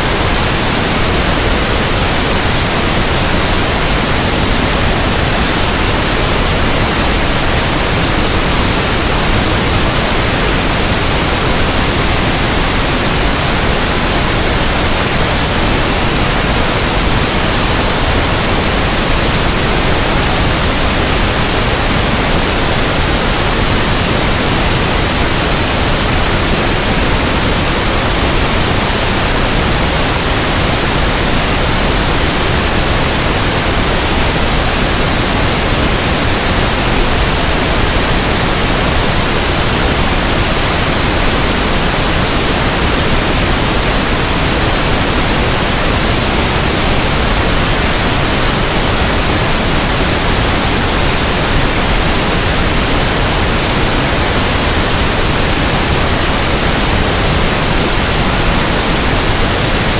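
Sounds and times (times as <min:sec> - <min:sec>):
steady pink noise hiss: 0:00.0 - 0:59.9.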